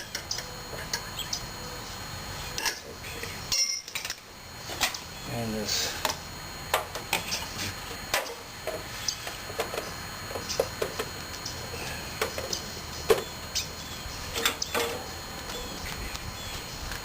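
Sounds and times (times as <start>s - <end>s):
small metal parts clinking: 3.5s - 4.2s.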